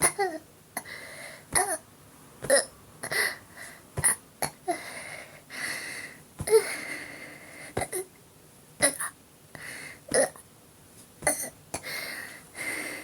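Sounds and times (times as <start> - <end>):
breathy sounds: 11.8 - 13.0.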